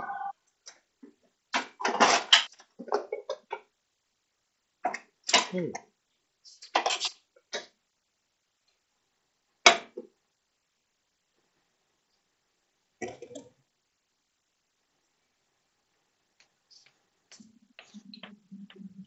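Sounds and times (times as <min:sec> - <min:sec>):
person murmuring: 0:17.8 - 0:19.0.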